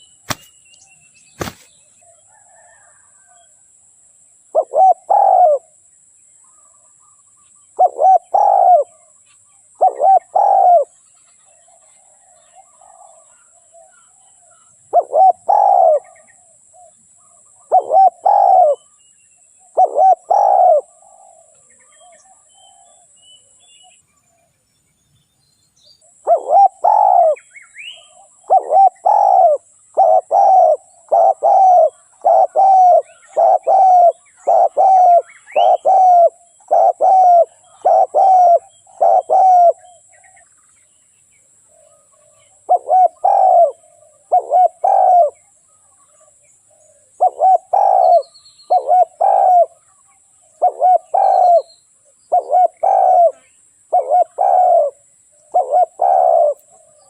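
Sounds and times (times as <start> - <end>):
small birds chirping: 0.0 - 2.8, 6.4 - 57.0
dove cooing: 1.4 - 3.4, 4.5 - 5.8, 7.7 - 11.0, 11.6 - 19.0, 19.6 - 23.2, 26.2 - 40.4, 41.8 - 51.7, 52.3 - 57.0.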